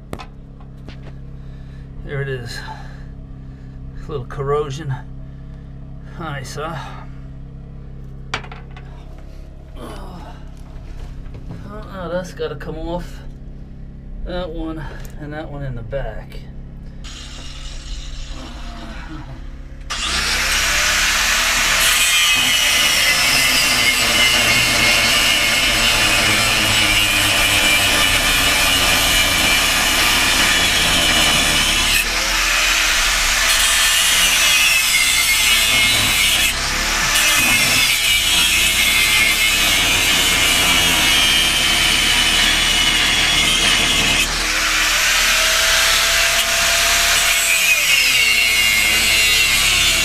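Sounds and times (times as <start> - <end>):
power tool cutting metal: 17.0 - 50.0.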